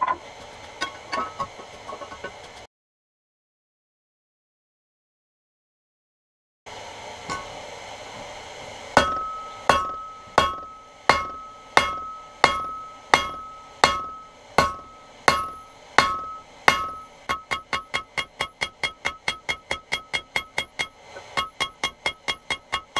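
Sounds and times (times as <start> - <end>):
hammer striking iron on anvil: 0.8 - 2.3, 7.2 - 7.6, 9.0 - 22.9.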